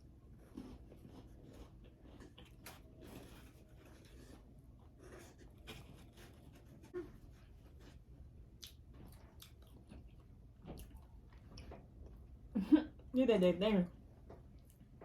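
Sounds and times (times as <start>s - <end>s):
low steady hum: 0.0s - 15.0s
person chewing: 0.3s - 12.3s.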